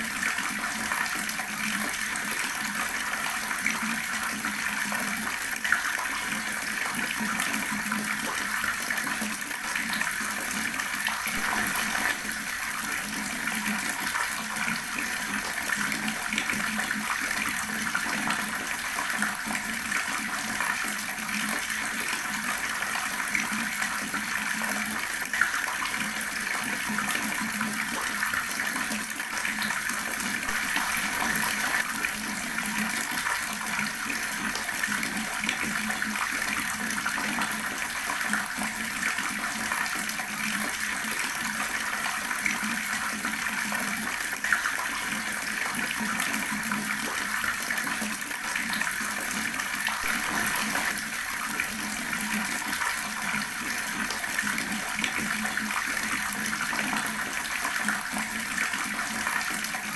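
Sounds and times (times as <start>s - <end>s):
water running from a tap: 0.0s - 59.9s.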